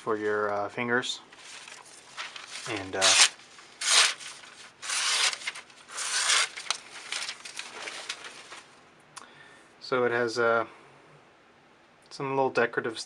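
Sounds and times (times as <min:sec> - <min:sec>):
faint rustling: 0:01.3 - 0:08.8
rough scraping strokes: 0:01.4 - 0:08.7.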